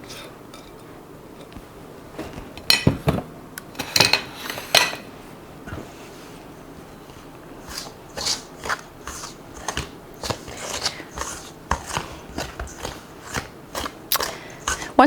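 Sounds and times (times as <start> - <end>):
utensil scraping mixing bowl: 7.1 - 15.0.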